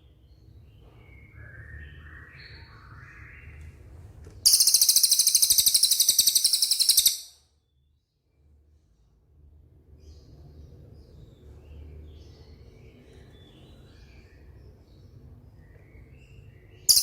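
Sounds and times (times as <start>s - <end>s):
songbird singing high trill: 4.5s - 7.4s.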